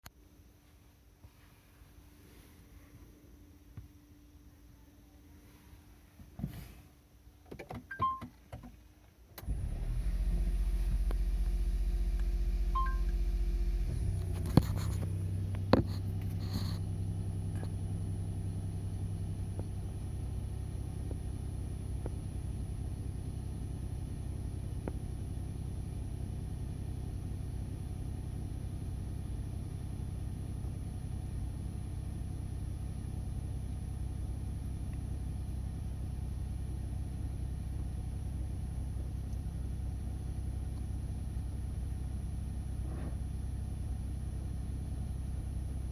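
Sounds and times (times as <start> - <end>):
car engine idling: 9.4 - 45.9
humming tone in engine: 9.4 - 45.9.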